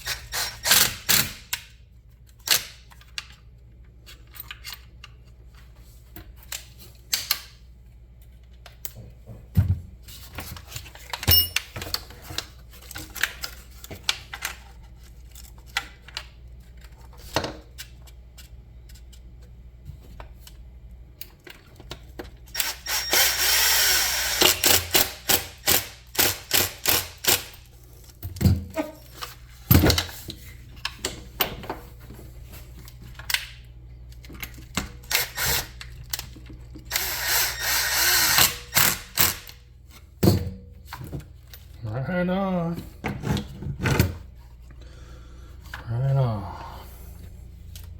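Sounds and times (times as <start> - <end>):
power drill running: 22.6 - 27.5, 35.1 - 35.8, 36.9 - 39.5.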